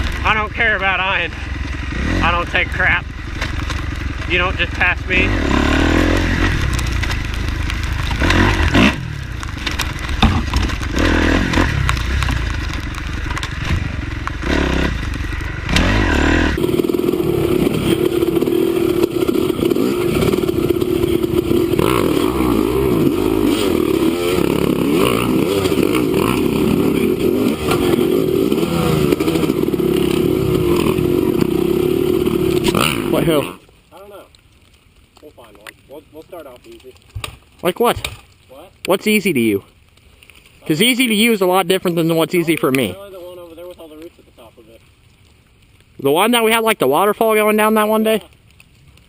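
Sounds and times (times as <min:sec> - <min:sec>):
dirt bike engine revving: 0:00.0 - 0:33.7
engine running steadily: 0:00.0 - 0:34.1
knocks and clatter: 0:06.2 - 0:16.0.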